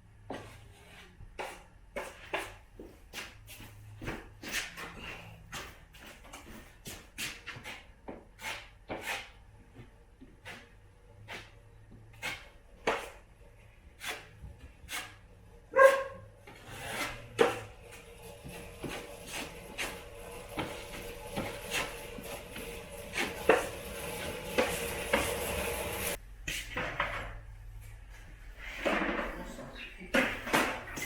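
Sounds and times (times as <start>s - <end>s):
hand tools scraping drywall: 0.3s - 15.6s, 16.3s - 27.1s.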